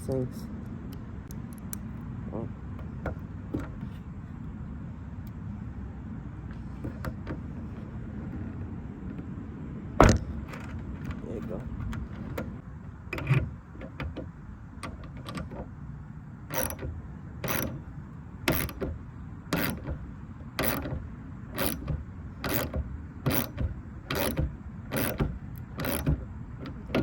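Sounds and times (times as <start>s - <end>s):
ratchet wrench clicking: 16.5s - 16.8s, 17.4s - 17.8s, 18.5s - 18.8s, 19.6s - 19.9s, 20.6s - 20.9s, 21.6s - 27.0s.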